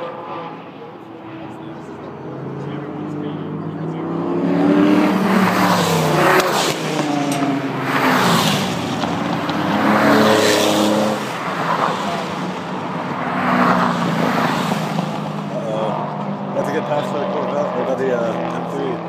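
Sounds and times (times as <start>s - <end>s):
sports car engine at speed: 0.0s - 19.0s.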